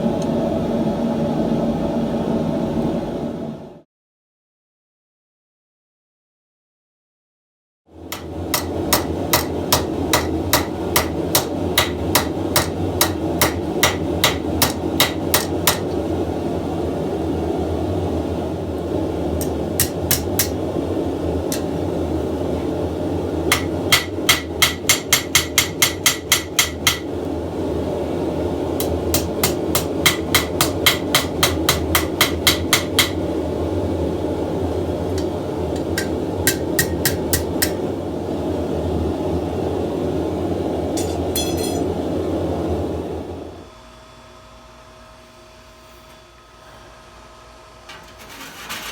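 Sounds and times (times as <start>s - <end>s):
hammer striking steel on anvil: 8.1s - 16.0s, 19.4s - 20.6s, 23.5s - 27.1s, 28.8s - 33.2s, 35.2s - 37.8s, 41.0s - 41.9s.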